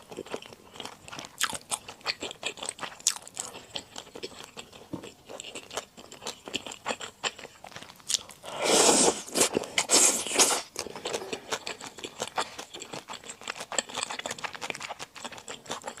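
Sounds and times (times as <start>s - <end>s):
wet chewing: 0.0s - 16.0s
noodle slurp: 8.5s - 10.7s.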